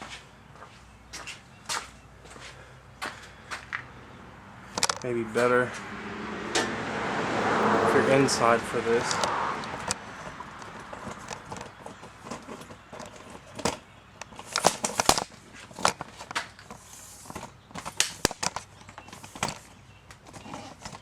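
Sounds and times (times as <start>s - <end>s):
clicks and knocks of plastic trim: 4.8s - 5.1s, 9.1s - 21.0s.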